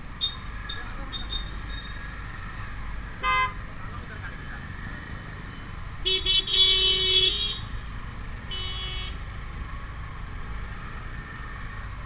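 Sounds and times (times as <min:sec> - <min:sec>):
vehicle horn honking: 0:03.2 - 0:03.6.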